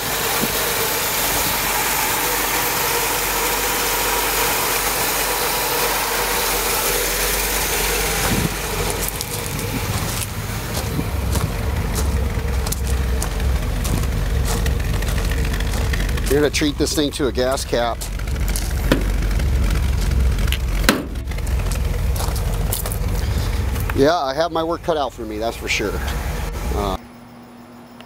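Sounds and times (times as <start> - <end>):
car engine idling: 0.0 - 27.2
deep low rumble: 6.5 - 27.0.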